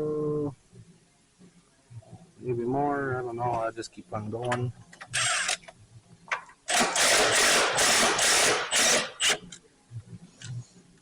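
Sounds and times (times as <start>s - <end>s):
handheld power tool bursts: 5.2s - 5.6s, 6.7s - 9.5s.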